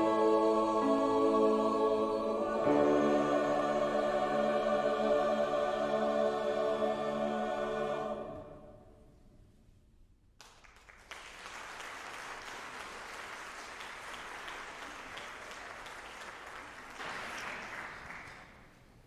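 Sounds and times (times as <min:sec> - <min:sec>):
congregation applauding: 0:10.4 - 0:18.9.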